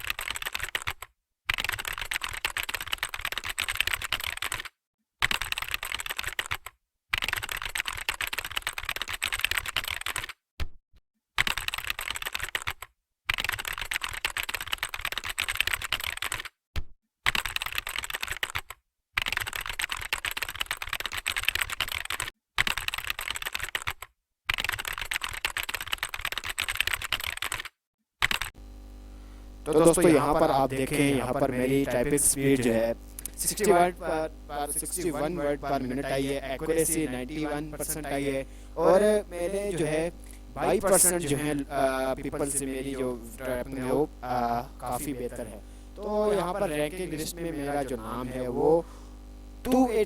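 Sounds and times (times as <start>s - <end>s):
fast typing on keyboard: 0.0s - 10.4s, 11.4s - 16.6s, 17.2s - 28.6s.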